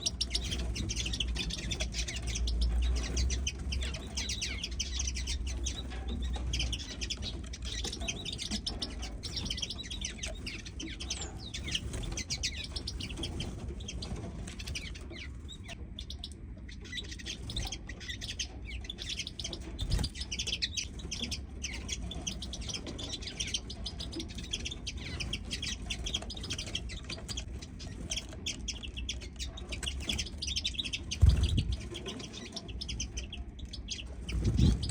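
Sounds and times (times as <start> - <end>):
small songbirds chirping: 0.0 - 34.9
low rumble: 31.1 - 31.9.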